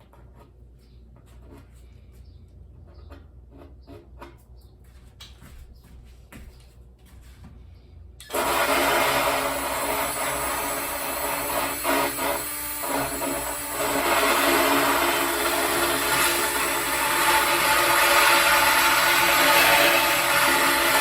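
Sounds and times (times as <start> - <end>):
sanding disc grinding wood: 8.4 - 21.0.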